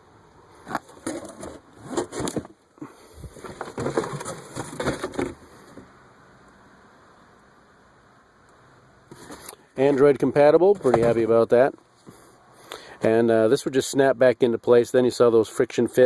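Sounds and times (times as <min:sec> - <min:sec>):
hard plastic parts clicking and knocking: 0:03.4 - 0:05.8.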